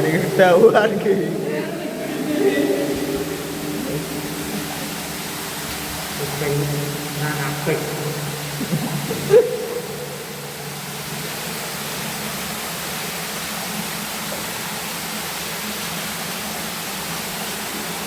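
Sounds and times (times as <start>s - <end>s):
faint low hum: 0.0s - 13.0s
steady rushing hiss: 0.0s - 18.0s.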